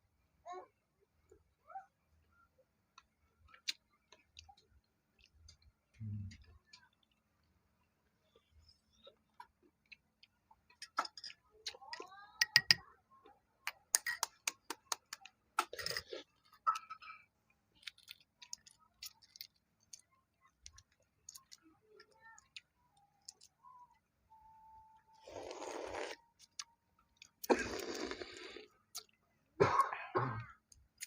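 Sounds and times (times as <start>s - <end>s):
eggshells cracking and peeling: 17.7s - 20.0s.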